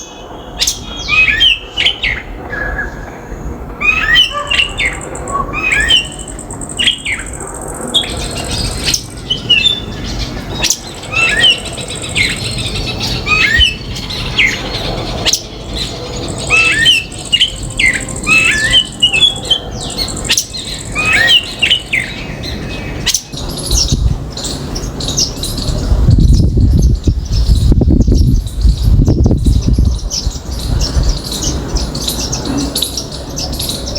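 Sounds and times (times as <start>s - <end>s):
low rumbling noise: 0.0s - 33.9s
myna squawking and whistling: 3.8s - 22.2s.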